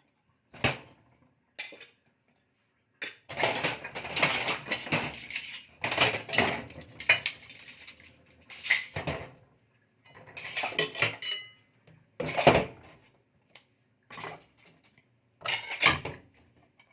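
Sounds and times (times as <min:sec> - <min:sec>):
plates and cutlery clattering: 0:01.6 - 0:02.0, 0:03.0 - 0:09.3, 0:10.1 - 0:11.6, 0:12.2 - 0:12.8, 0:14.1 - 0:16.2.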